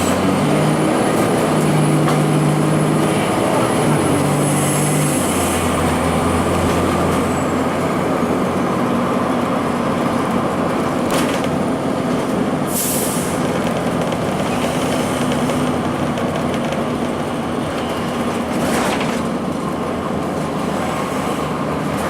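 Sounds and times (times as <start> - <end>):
bus diesel engine running: 0.0 - 22.0
road and cabin noise: 0.0 - 22.0
air brake hiss: 12.7 - 13.5.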